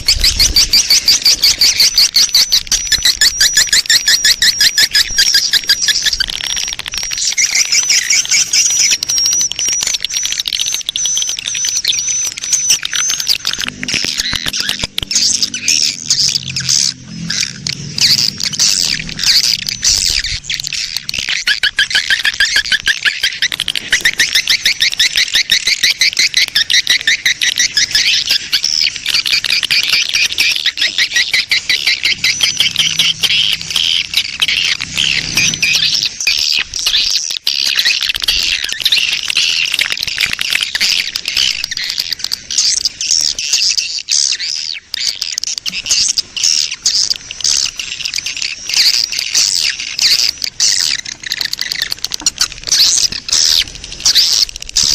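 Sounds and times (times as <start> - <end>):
swiftlets chirping and twittering: 0.0 - 54.9
weak low sound: 14.2 - 21.4, 31.6 - 36.8.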